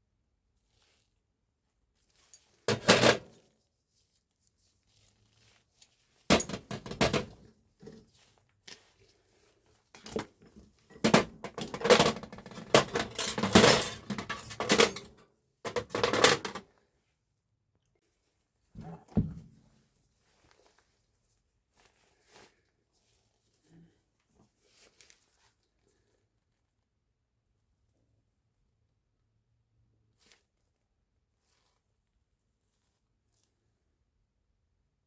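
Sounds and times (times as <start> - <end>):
metal parts clinking: 6.3 - 7.3, 10.9 - 16.6.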